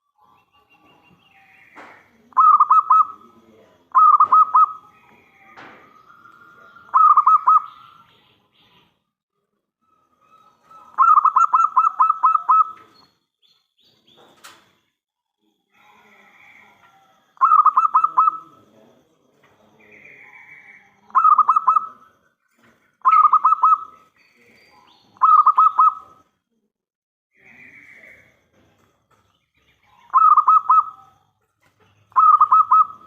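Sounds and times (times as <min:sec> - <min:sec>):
dove cooing in staccato notes: 0:01.8 - 0:08.0, 0:10.5 - 0:12.9, 0:16.8 - 0:18.6, 0:21.1 - 0:22.2, 0:23.0 - 0:24.0, 0:25.2 - 0:26.2, 0:30.0 - 0:31.3, 0:32.1 - 0:33.0.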